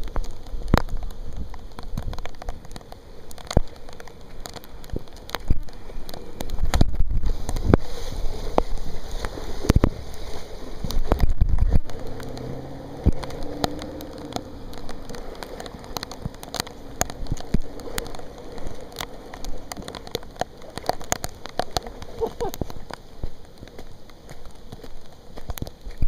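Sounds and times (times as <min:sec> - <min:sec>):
vehicle rushing through water: 0:00.0 - 0:23.7
raindrops tapping: 0:00.0 - 0:26.0
engine hum: 0:08.2 - 0:26.0.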